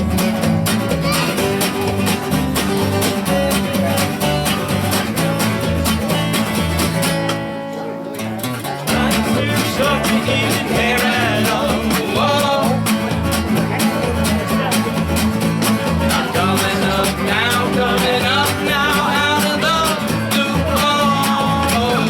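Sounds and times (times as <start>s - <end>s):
steady drum beat: 0.0s - 7.4s, 8.9s - 22.0s
electric guitars: 0.0s - 22.0s
person singing: 8.9s - 14.8s, 15.8s - 22.0s.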